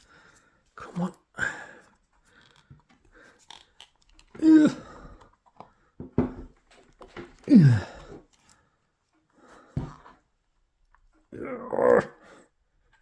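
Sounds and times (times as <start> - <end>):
person grunting with effort: 4.4 - 5.0, 7.5 - 8.2, 11.4 - 12.2.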